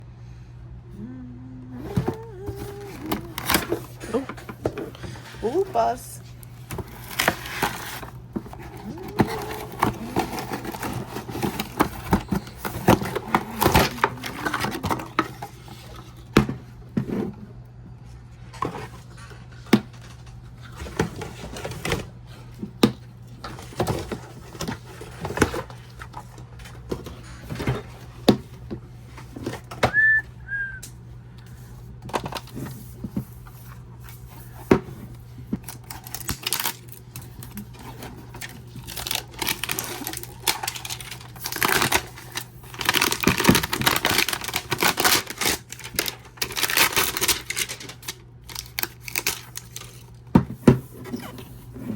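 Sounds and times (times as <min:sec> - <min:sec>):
toy packaging being opened: 0:01.8 - 0:16.3, 0:35.3 - 0:50.3.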